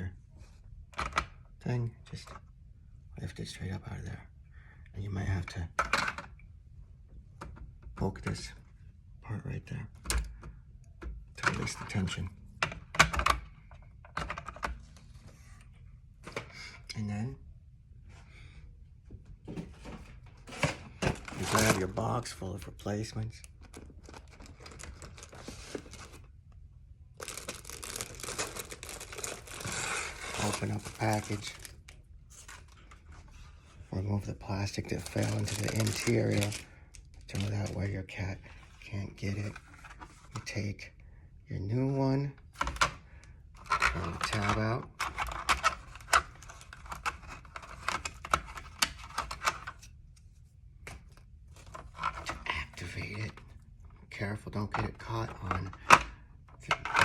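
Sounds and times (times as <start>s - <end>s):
plastic packaging crinkling: 21.3s - 22.2s, 23.4s - 26.3s, 27.2s - 32.9s, 34.8s - 37.8s
plastic clicking and rattling: 23.5s - 26.3s.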